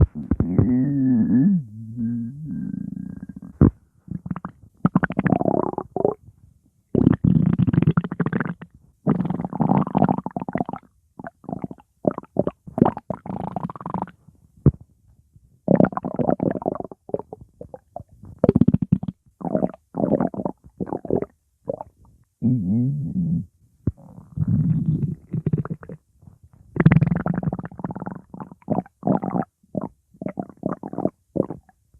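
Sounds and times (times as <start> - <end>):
stomach growling: 0.0 - 6.2, 7.0 - 14.8, 15.7 - 26.0, 26.7 - 31.8.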